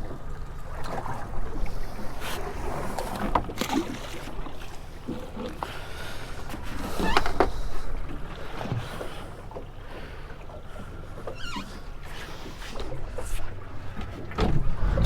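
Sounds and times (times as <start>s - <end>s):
rumble of wind and water: 0.0s - 15.0s
short squeaky chirping: 11.3s - 11.9s.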